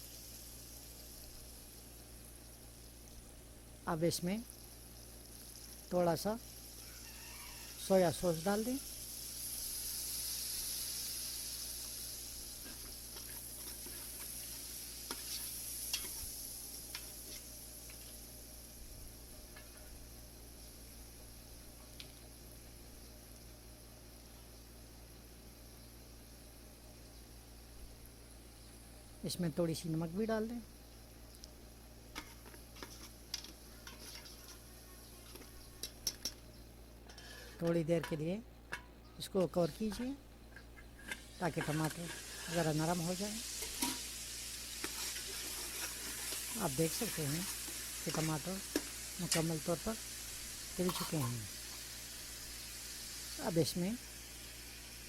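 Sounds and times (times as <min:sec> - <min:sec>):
sauce sizzling in a pan: 0:00.0 - 0:29.2, 0:30.2 - 0:38.2, 0:40.7 - 0:55.0
faint steady hum: 0:00.0 - 0:55.0
spoon scraping a cooking pot: 0:33.8 - 0:34.6, 0:37.1 - 0:38.8, 0:44.8 - 0:49.4, 0:50.8 - 0:51.4.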